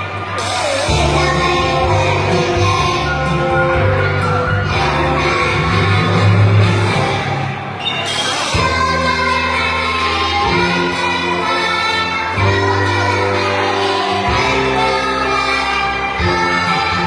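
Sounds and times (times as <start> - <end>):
bass line: 0.0 - 7.8, 8.6 - 17.0
women and children singing: 0.0 - 17.0
instrumental accompaniment: 0.2 - 16.9.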